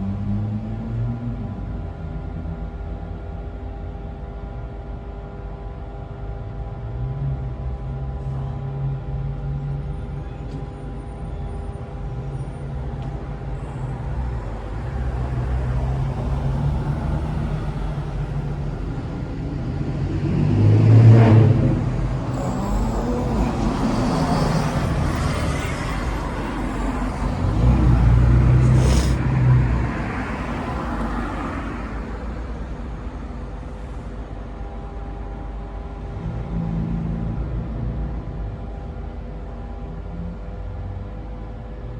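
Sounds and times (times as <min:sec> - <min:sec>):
vehicles passing close by: 0:09.8 - 0:37.9
traffic engine hum: 0:09.9 - 0:36.2.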